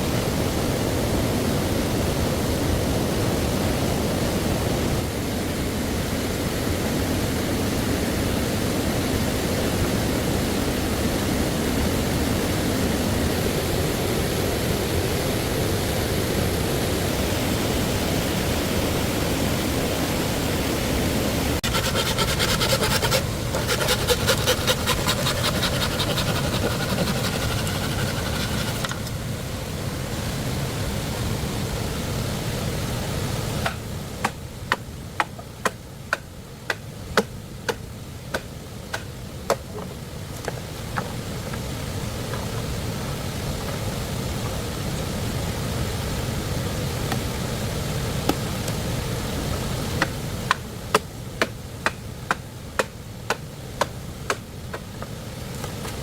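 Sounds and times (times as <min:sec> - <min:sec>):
stream water flowing: 0:17.4 - 0:34.8
hand tool rasping bamboo: 0:21.6 - 0:29.1.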